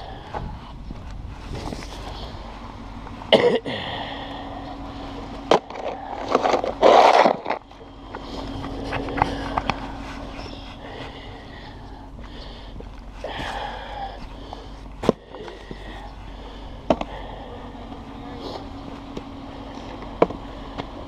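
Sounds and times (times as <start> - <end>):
faint low hum: 0.0 - 21.0
snow shovel scraping pavement: 5.9 - 11.2.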